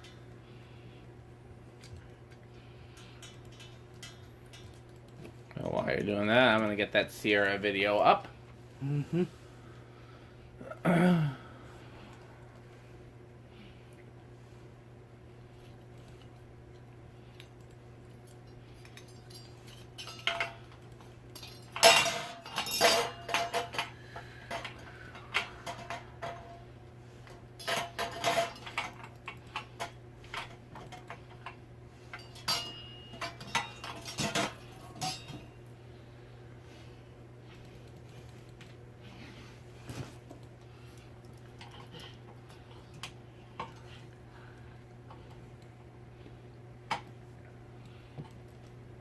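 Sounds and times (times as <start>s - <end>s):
faint low hum: 0.0s - 49.0s
fan hardware clicking and tapping: 1.8s - 7.4s, 17.4s - 26.6s, 27.2s - 35.5s
metal parts clinking: 21.4s - 26.5s, 27.6s - 31.1s, 32.1s - 35.5s.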